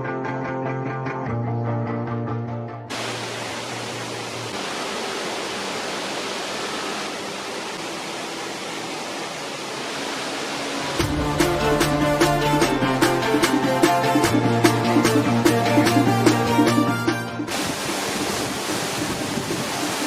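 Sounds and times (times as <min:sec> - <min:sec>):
music: 0:00.0 - 0:02.9, 0:11.0 - 0:20.0
waterfall rushing: 0:02.9 - 0:15.2, 0:17.5 - 0:20.0.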